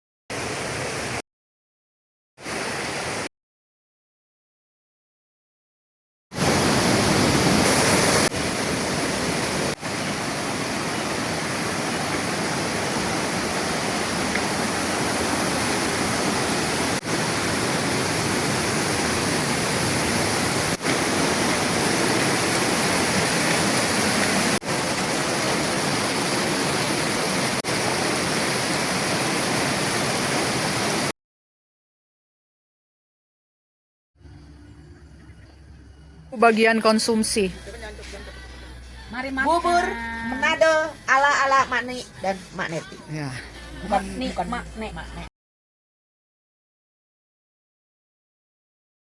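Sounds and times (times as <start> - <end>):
waterfall roaring: 6.4 - 31.1.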